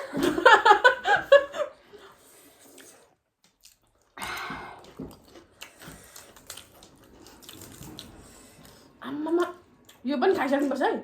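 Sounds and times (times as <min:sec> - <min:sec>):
person chewing: 0:02.2 - 0:10.0.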